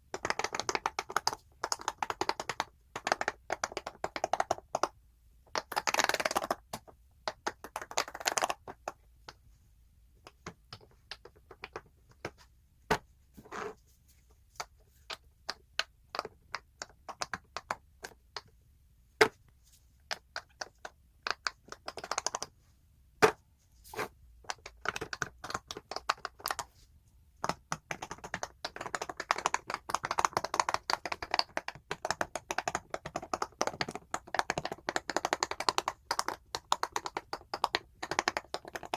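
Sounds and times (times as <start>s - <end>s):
fidget toy bubbles popping: 27.4s - 38.9s.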